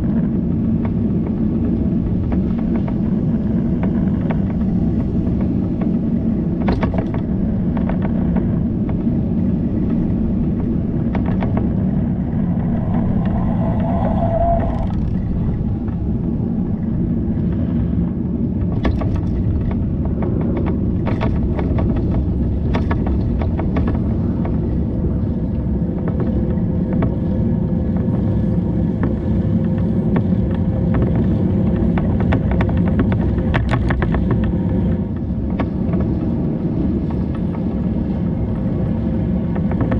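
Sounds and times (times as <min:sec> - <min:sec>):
bicycle wind and road rumble: 0:00.0 - 0:39.9
short wavering tone: 0:11.9 - 0:15.8
bicycle clicks and rattles: 0:32.0 - 0:34.5.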